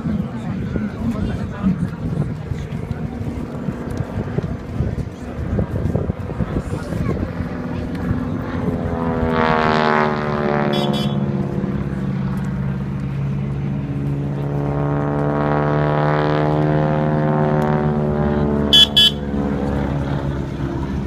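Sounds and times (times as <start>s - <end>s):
biplane engine droning past: 0.0s - 21.0s
sharp high blip: 18.8s - 19.3s.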